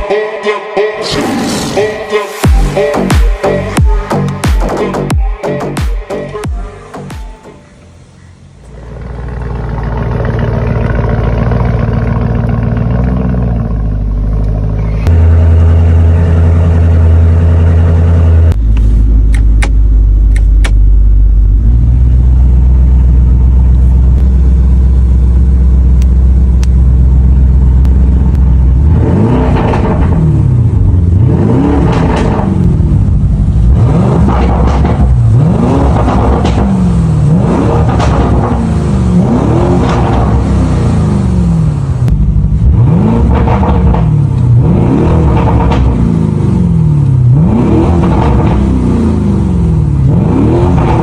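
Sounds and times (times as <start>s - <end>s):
car engine idling loudly: 7.8s - 29.0s
engine revving: 8.6s - 51.0s.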